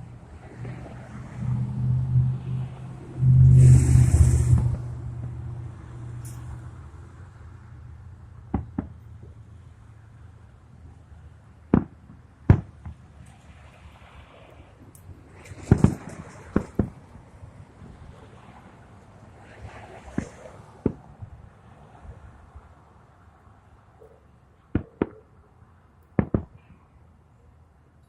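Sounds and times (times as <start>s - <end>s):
fireworks sharp bangs: 8.5s - 9.1s, 11.7s - 13.3s, 15.3s - 17.2s, 24.7s - 25.3s, 26.1s - 26.7s.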